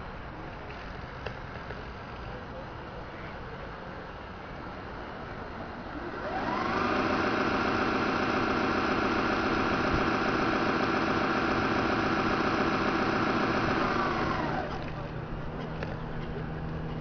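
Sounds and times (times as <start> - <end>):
model boat motor whining: 5.7 - 17.0.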